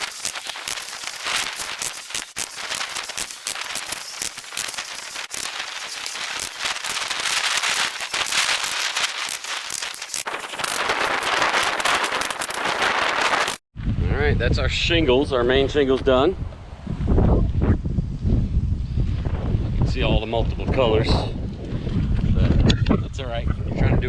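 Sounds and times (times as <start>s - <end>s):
shingles crackling and scraping: 0.0s - 13.6s.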